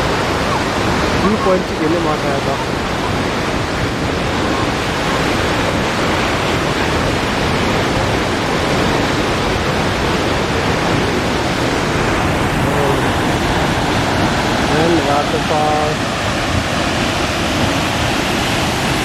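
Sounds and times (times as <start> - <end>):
waterfall rushing: 0.0 - 19.0.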